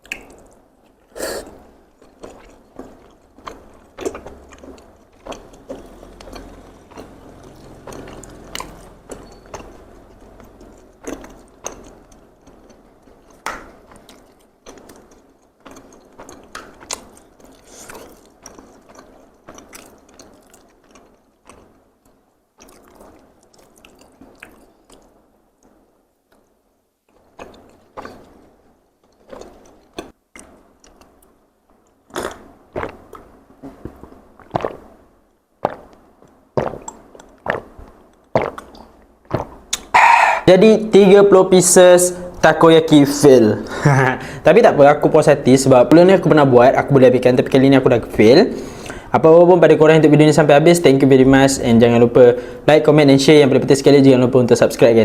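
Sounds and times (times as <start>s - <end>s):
close chewing mouth smacks: 0.0s - 26.5s, 27.1s - 34.9s, 35.6s - 40.5s.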